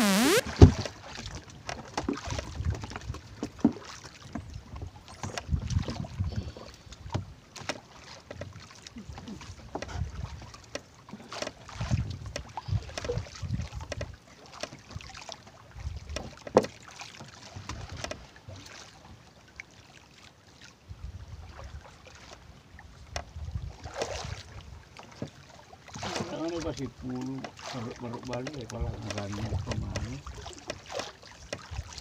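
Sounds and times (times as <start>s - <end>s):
water lapping against kayak hull: 0.0s - 32.0s.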